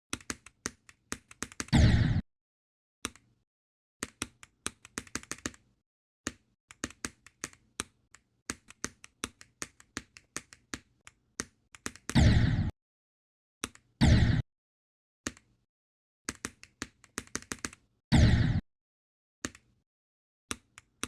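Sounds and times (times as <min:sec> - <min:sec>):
sharp irregular clicks: 0:00.1 - 0:01.8, 0:06.3 - 0:12.3.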